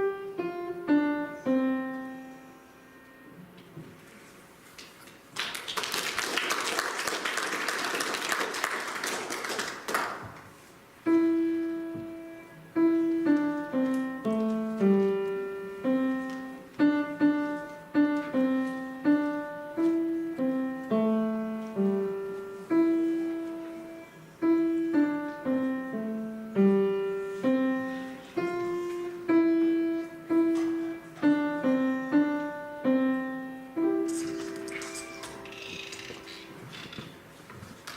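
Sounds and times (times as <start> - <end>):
piano melody: 0.0 - 4.0, 10.1 - 37.4
audience applauding: 5.3 - 10.4.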